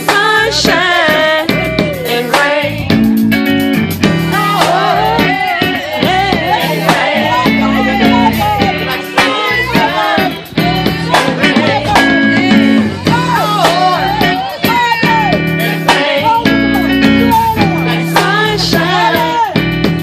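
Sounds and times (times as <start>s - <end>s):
song with guitar and bass: 0.0s - 20.0s
sliding melody line: 4.0s - 19.4s.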